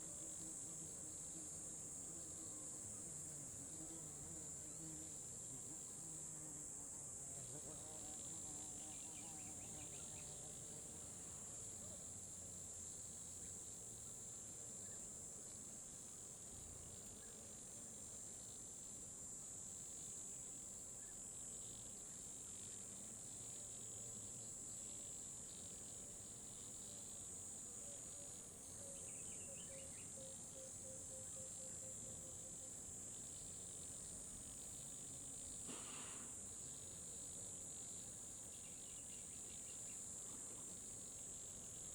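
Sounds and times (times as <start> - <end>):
insects chirring: 12.6 - 41.9.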